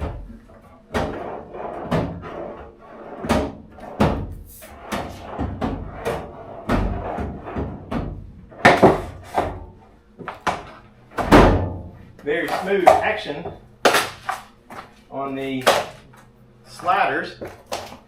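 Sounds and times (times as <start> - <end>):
steel drawers sliding: 0.6 - 7.8.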